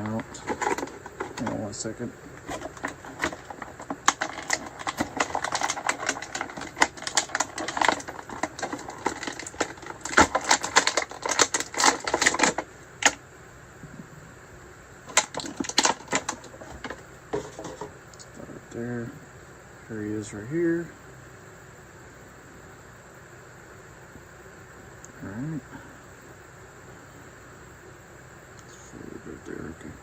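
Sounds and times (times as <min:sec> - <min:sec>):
plastic packaging clicks and crackles: 0:00.0 - 0:01.6, 0:02.3 - 0:13.2, 0:15.1 - 0:18.3.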